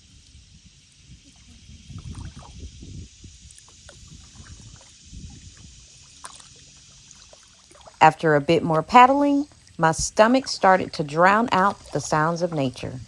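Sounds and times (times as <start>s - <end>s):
wind rumble on microphone: 0.0s - 7.0s, 8.5s - 13.0s
water dripping off paddle: 3.4s - 13.0s
paddle strokes in water: 3.5s - 13.0s.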